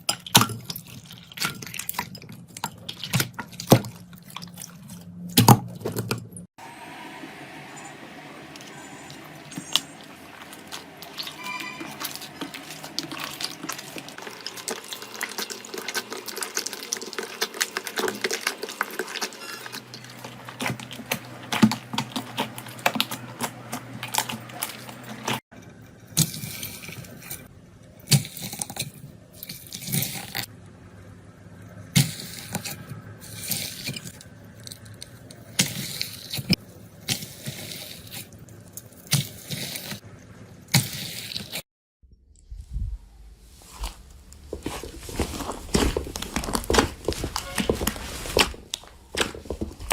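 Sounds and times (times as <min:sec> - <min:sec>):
slime squishing: 0:00.0 - 0:06.2, 0:08.6 - 0:25.4, 0:43.5 - 0:49.9
slime crackling and popping: 0:12.0 - 0:24.3.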